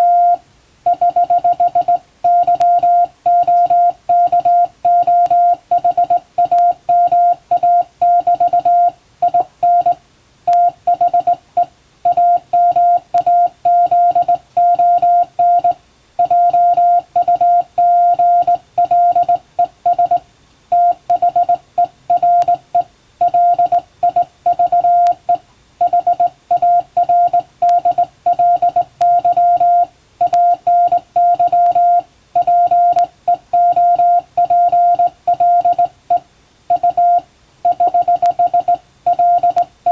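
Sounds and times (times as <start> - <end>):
morse code tone: 0.0 - 39.9.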